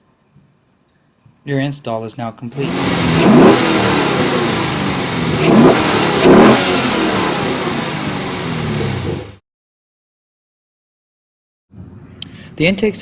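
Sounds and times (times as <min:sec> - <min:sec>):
car engine idling and revving: 0:02.6 - 0:09.4.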